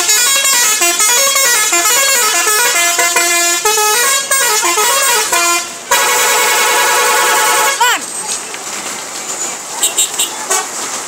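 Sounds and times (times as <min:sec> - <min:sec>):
bus musical horn melody: 0:00.0 - 0:08.0.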